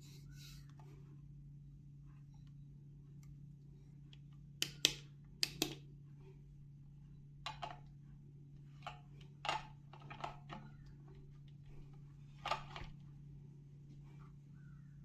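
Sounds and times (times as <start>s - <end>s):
steady low hum: 0.0s - 15.0s
plastic appliance clicks and taps: 4.6s - 5.8s.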